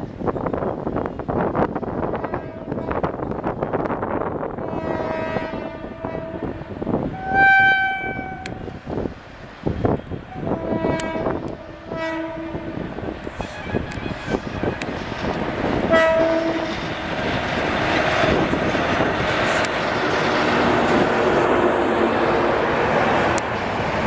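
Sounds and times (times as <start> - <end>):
locomotive dual-tone horn: 2.2 - 3.0, 4.6 - 6.6, 7.2 - 8.6, 10.3 - 12.8, 15.8 - 16.8
train wheels clattering on rail: 12.4 - 24.0.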